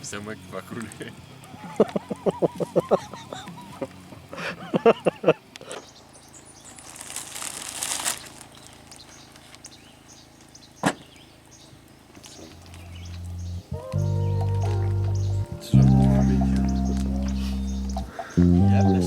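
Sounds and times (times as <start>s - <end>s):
low hum: 12.6s - 19.0s.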